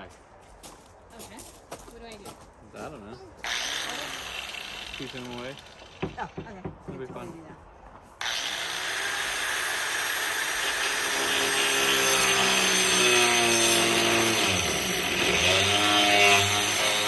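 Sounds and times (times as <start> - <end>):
power saw cutting board: 3.5 - 7.2, 8.2 - 17.0.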